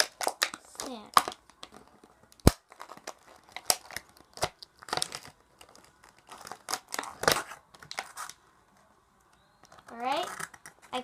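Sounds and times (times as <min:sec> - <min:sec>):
packaging crinkling and tearing: 0:00.0 - 0:08.4.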